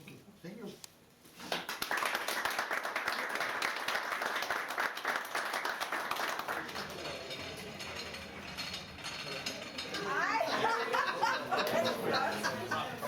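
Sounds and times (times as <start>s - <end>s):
small audience applauding: 1.4s - 7.9s.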